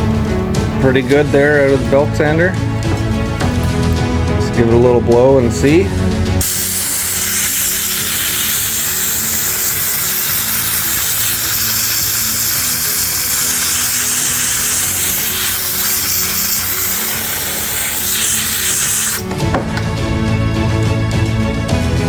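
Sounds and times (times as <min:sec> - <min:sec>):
compressed air hissing: 0:05.9 - 0:19.9.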